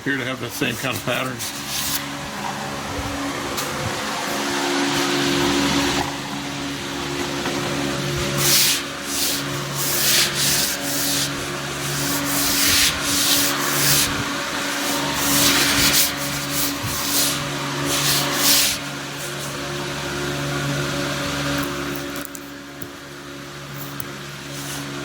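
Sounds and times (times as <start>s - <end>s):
steady machine hum: 0.0s - 25.0s
rubbing on tyre tread: 0.5s - 19.7s.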